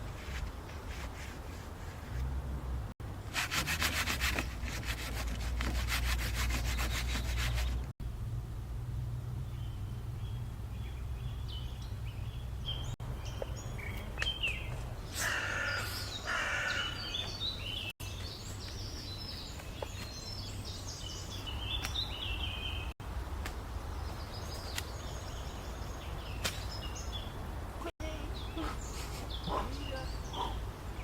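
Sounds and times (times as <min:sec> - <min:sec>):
low outdoor rumble: 0:00.0 - 0:03.3, 0:07.8 - 0:15.1
birds chirping: 0:09.4 - 0:23.0, 0:23.7 - 0:31.0
harsh rasping bird call: 0:15.1 - 0:17.2.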